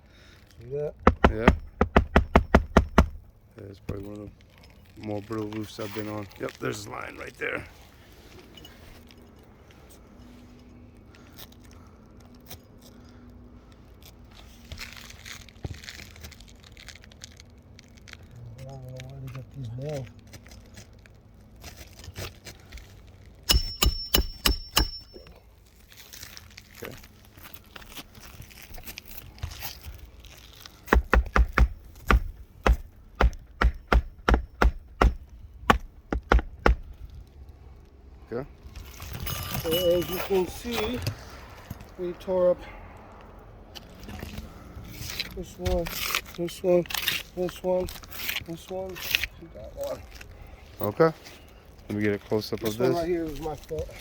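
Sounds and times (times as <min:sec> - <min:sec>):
roof shingles crackling and scraping: 0:00.1 - 0:23.5, 0:25.5 - 0:42.0, 0:43.7 - 0:54.0
handling noise: 0:00.9 - 0:06.9, 0:23.4 - 0:25.4, 0:26.3 - 0:37.4, 0:38.7 - 0:42.0
hammer striking roof shingles: 0:01.0 - 0:03.3, 0:23.5 - 0:25.2, 0:30.8 - 0:37.0
sharp knock: 0:01.1 - 0:03.2, 0:23.5 - 0:25.1, 0:30.9 - 0:36.9.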